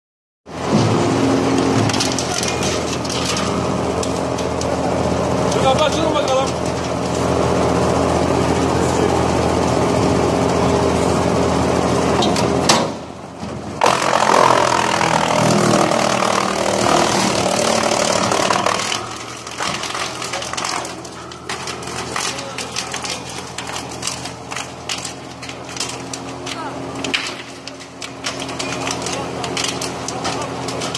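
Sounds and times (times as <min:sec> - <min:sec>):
wood chipper running: 0:00.5 - 0:30.9.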